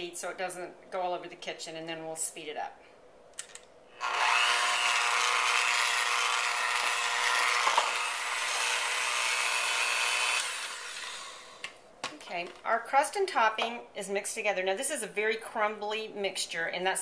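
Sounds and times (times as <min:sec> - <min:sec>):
electric mixer running: 0:04.0 - 0:11.6.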